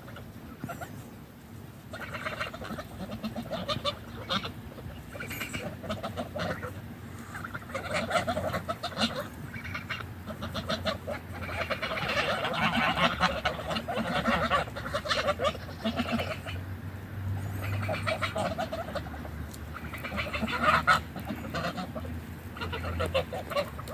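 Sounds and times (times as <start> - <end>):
geese honking and chattering: 0.0 - 23.9.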